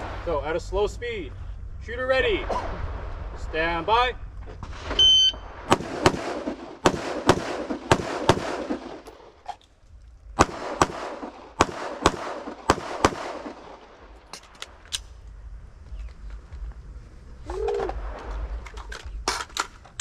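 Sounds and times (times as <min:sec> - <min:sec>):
rifle shots: 0:04.6 - 0:09.5, 0:10.4 - 0:15.1
pistol shots: 0:04.8 - 0:09.4, 0:10.4 - 0:15.1.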